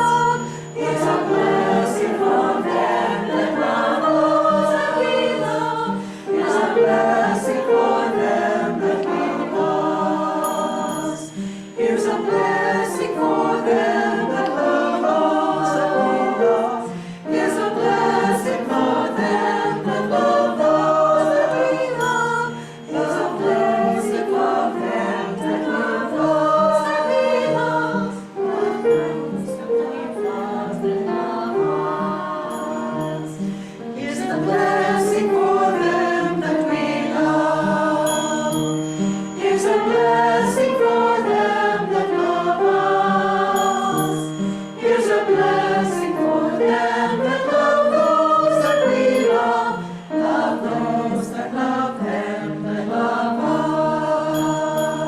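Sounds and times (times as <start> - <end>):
choir singing a hymn: 0.0 - 55.0.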